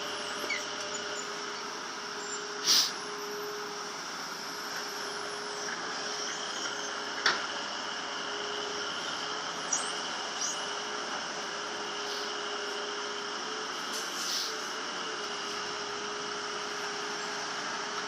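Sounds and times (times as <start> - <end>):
excavator running: 0.0 - 18.0.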